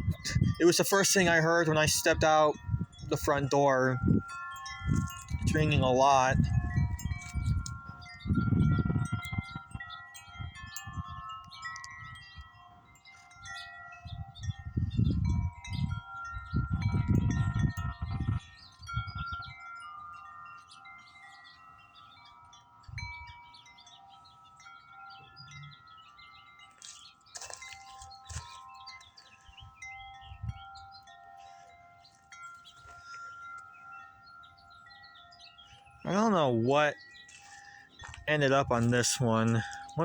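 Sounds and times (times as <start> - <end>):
wind rumbling on microphone: 0.0 - 20.8, 22.8 - 23.6, 27.6 - 31.0
tubular wind chimes ringing: 0.0 - 40.0.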